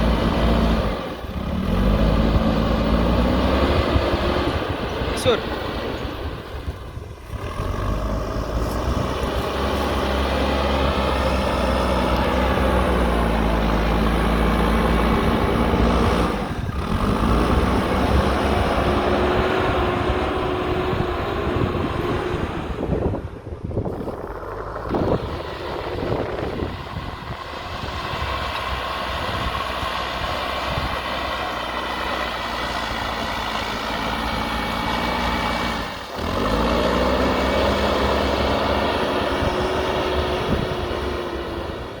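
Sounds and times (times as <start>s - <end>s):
diesel engine revving: 0.0s - 42.0s.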